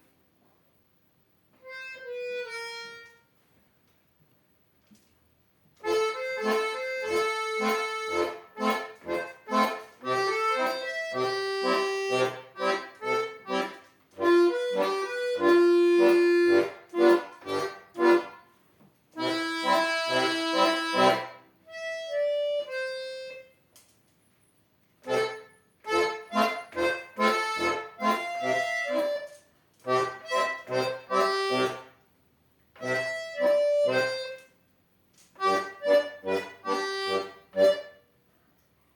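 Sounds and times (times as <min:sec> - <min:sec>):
solo accordion playing: 0:01.6 - 0:03.4, 0:05.8 - 0:18.5, 0:19.2 - 0:23.7, 0:25.0 - 0:32.0, 0:32.8 - 0:34.6, 0:35.4 - 0:38.0.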